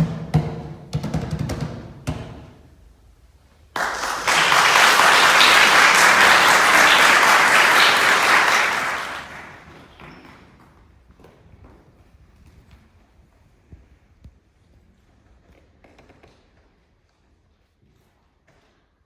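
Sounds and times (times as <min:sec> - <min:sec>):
audience applauding: 0:03.8 - 0:10.0.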